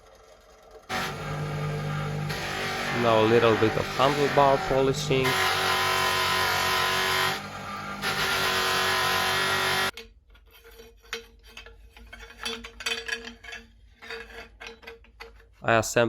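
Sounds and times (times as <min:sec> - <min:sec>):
electric polishing machine running: 0:00.9 - 0:09.9.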